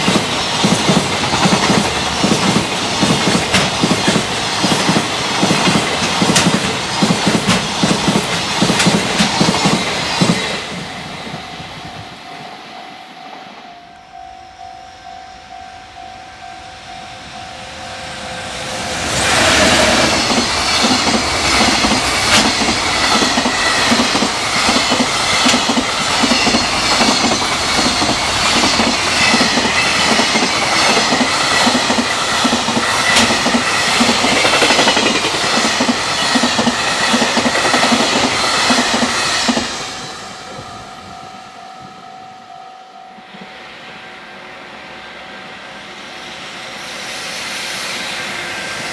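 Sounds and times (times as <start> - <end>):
train wheels clattering over rails: 0.0 - 12.1, 18.2 - 40.6
steady ringing tone: 11.4 - 19.2, 40.0 - 45.8.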